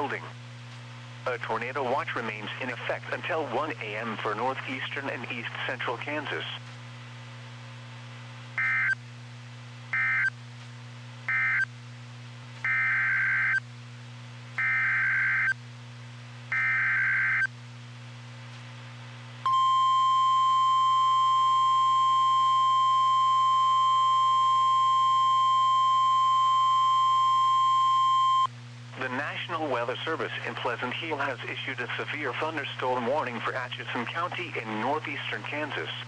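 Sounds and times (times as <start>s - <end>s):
data burst tones: 19.5s - 28.5s
steady warning alarm tone: 19.5s - 28.5s.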